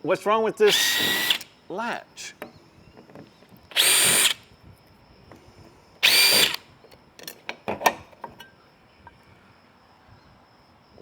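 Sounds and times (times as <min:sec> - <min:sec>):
power drill whirring: 0:00.7 - 0:01.5, 0:03.7 - 0:04.4, 0:06.0 - 0:06.7.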